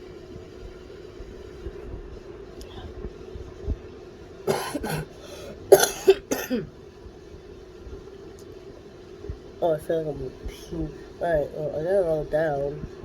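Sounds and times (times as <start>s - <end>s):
person coughing hard: 4.5s - 6.7s.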